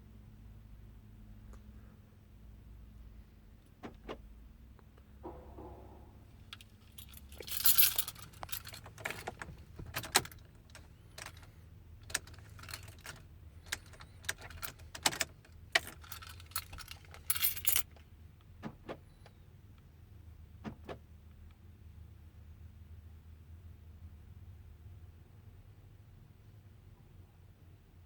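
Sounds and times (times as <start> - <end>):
key ring jangling: 6.5 - 11.5, 15.8 - 17.9.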